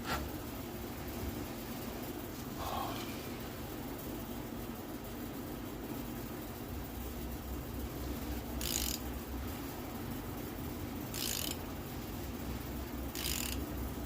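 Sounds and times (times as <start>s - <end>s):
background hum: 0.0s - 14.0s
ratchet wrench clicking: 8.6s - 9.1s, 11.1s - 11.7s, 13.1s - 13.7s.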